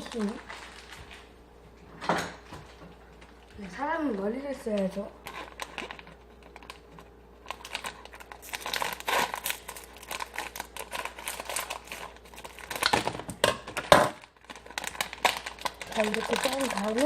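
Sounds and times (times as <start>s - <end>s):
crinkly packaging rustling: 0.0s - 1.4s, 2.4s - 17.0s
scissors cutting packaging: 7.4s - 13.2s, 13.8s - 17.0s.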